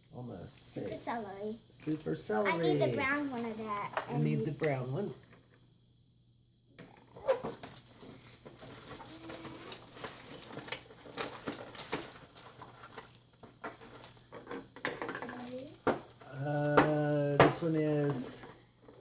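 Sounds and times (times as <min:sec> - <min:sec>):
plastic packaging crinkling and tearing: 0:07.7 - 0:13.1.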